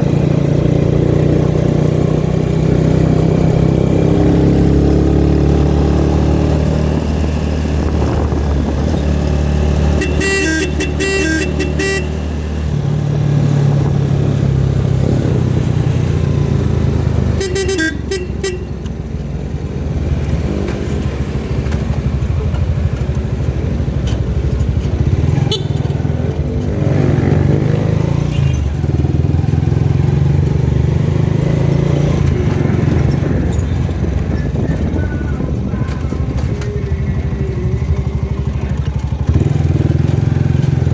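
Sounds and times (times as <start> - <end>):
vehicle engine running: 0.0 - 40.9
quick repeated horn toots: 9.8 - 12.4, 17.2 - 18.9, 25.3 - 26.0.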